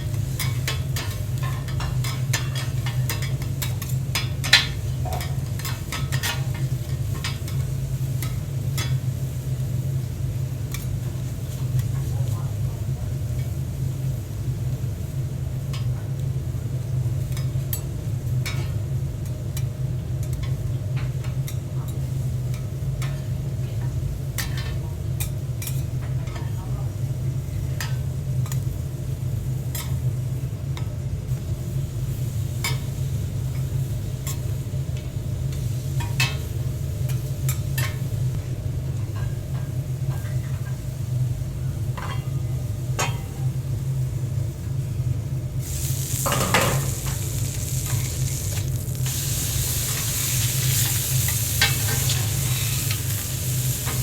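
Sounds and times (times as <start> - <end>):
steady low hum: 0.0 - 54.0
food sizzling: 31.4 - 54.0
metal clinking against pans: 42.0 - 43.6
utensils stirring and scraping: 45.7 - 54.0.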